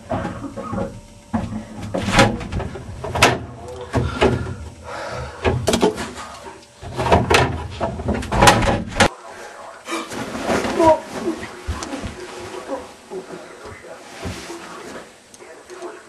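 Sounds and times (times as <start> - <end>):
knocks bangs and clunks: 0.0 - 6.2, 6.8 - 9.1.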